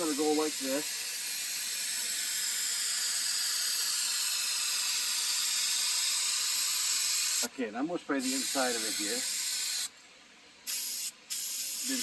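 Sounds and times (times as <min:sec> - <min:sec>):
aerosol can spraying: 0:00.0 - 0:07.5, 0:08.2 - 0:09.9, 0:10.7 - 0:12.0.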